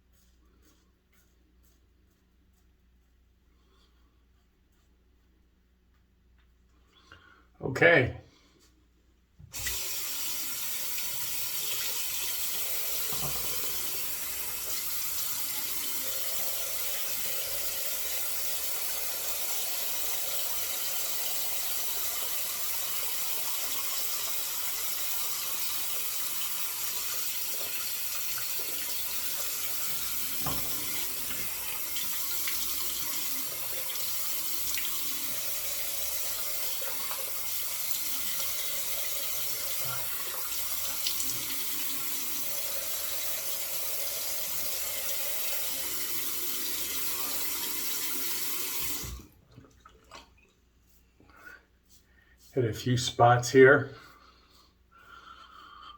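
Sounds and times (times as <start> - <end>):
tap running into sink: 11.5 - 14.0, 27.8 - 33.4
faint knocks and splashes: 29.9 - 31.7, 49.3 - 50.6.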